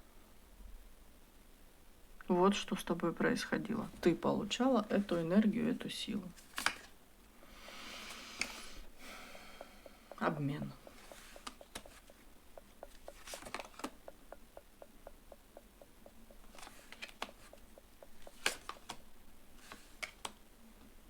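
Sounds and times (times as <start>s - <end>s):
cards rustling and tapping: 6.4s - 7.0s, 7.6s - 20.4s
fast faint ticking: 7.4s - 20.2s.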